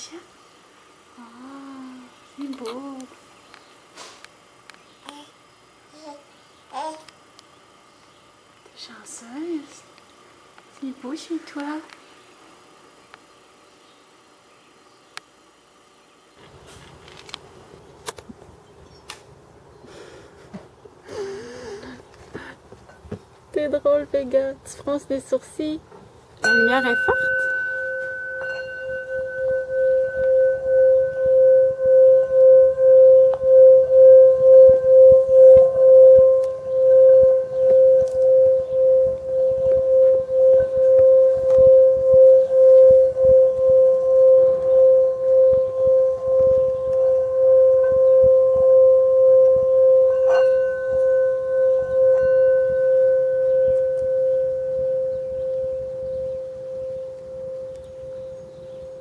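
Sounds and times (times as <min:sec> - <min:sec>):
singing bowl ringing: 0:26.4 - 0:59.0.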